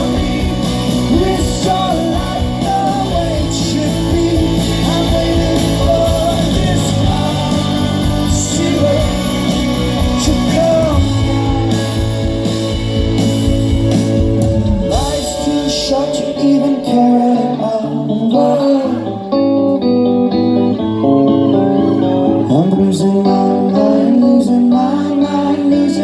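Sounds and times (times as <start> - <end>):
person singing lead vocal: 0.0 - 12.6, 14.6 - 26.0
low bass notes: 0.0 - 18.4
rock band playing live: 0.0 - 26.0.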